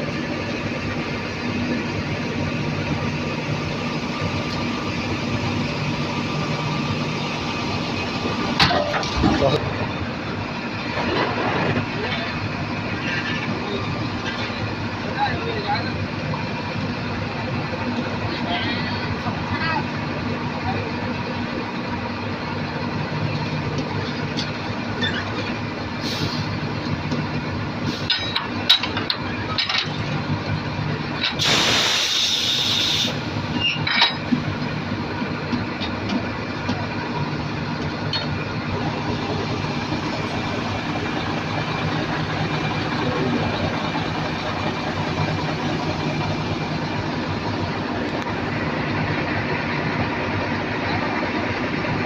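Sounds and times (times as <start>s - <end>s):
heavy diesel engines running: 0.0s - 52.0s
loud hiss: 31.4s - 33.3s.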